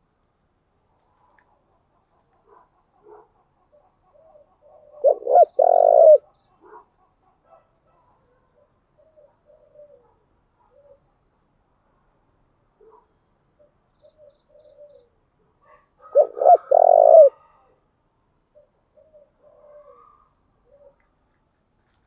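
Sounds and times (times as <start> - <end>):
dove cooing: 4.1 - 6.8, 9.0 - 11.0, 14.1 - 15.1, 16.0 - 17.6, 18.6 - 21.0.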